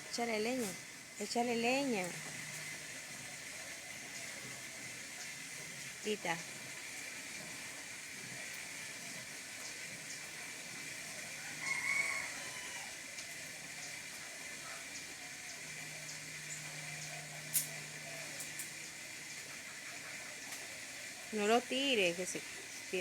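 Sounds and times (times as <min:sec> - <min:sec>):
campfire hissing and crackling: 0:00.0 - 0:23.0
rooster crowing: 0:11.3 - 0:13.6, 0:14.6 - 0:18.8
campfire pop: 0:17.5 - 0:18.8.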